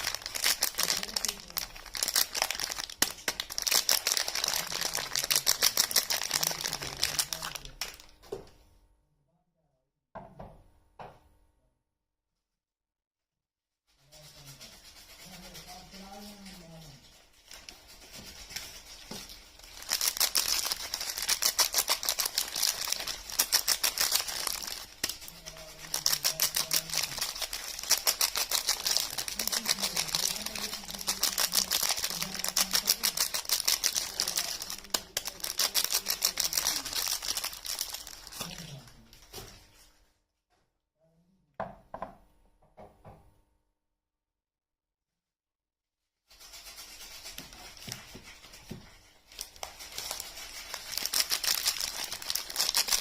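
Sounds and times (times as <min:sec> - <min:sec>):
wrapper crinkling and tearing: 0:00.0 - 0:08.2, 0:16.4 - 0:39.6, 0:49.0 - 0:53.0.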